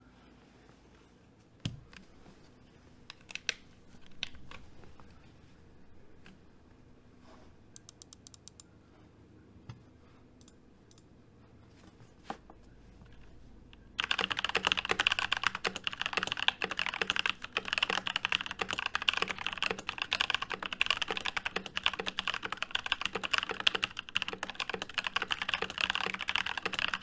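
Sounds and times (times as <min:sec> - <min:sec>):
keyboard clicks: 0:03.1 - 0:04.6, 0:07.7 - 0:08.7, 0:10.4 - 0:11.1, 0:13.2 - 0:27.0
keyboard typing: 0:03.1 - 0:04.7, 0:07.8 - 0:08.7, 0:13.1 - 0:27.0.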